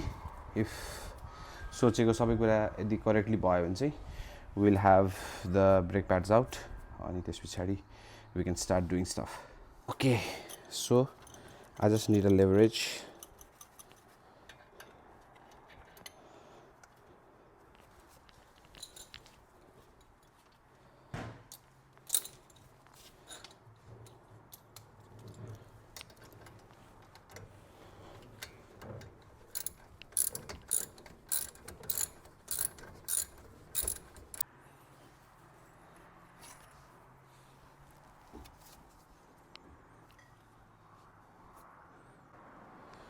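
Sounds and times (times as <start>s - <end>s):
ratchet wrench clicking: 22.1s - 22.6s, 29.5s - 34.4s.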